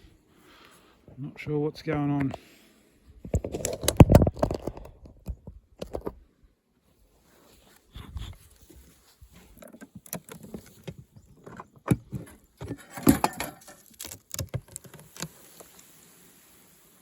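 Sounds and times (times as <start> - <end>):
wooden beehive knocks and scrapes: 9.4 - 15.8.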